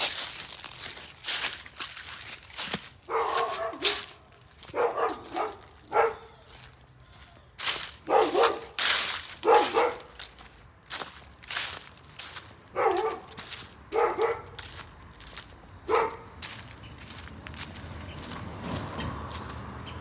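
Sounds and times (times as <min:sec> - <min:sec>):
dog barking angrily: 0:03.0 - 0:06.4, 0:08.0 - 0:10.4, 0:12.6 - 0:14.8, 0:15.8 - 0:16.4.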